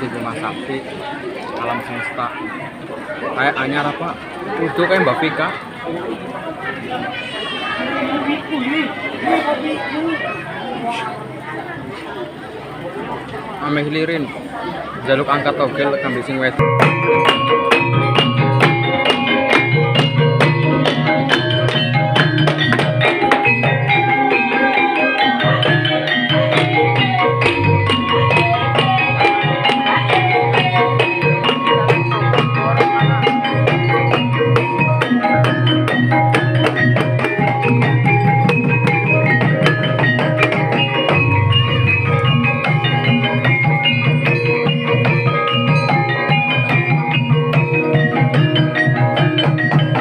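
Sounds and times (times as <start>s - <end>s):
gamelan music: 15.0s - 50.0s.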